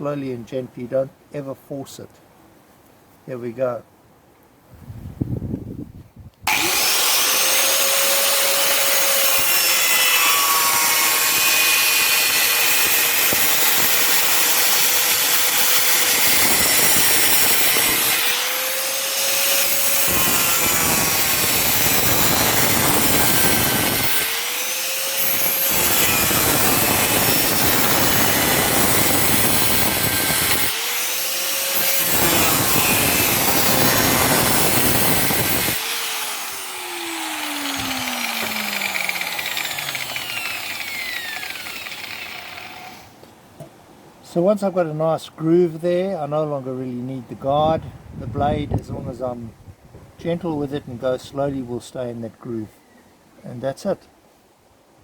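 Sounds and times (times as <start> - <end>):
angle grinder cutting: 6.5 - 43.2.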